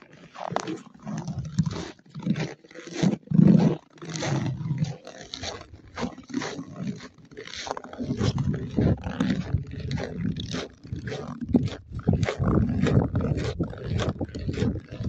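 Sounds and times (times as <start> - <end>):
dog growling: 3.4 - 15.0.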